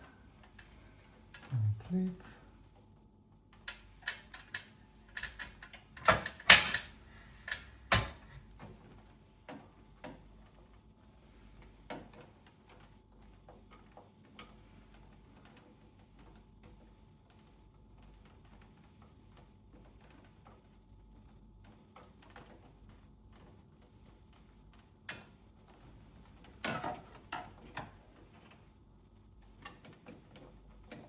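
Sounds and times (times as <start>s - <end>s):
plastic clips clicking and knocking: 3.7s - 8.3s.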